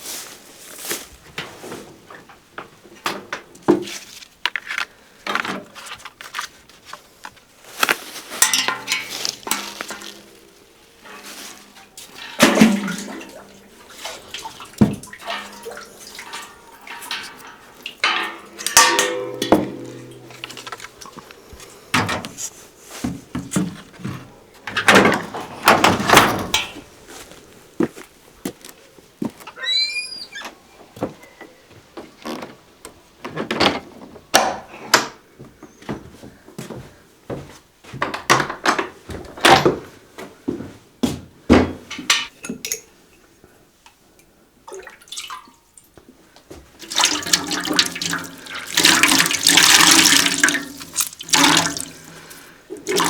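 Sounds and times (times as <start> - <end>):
dishes and cookware clinking: 8.3 - 22.4, 23.4 - 26.9, 41.8 - 43.0.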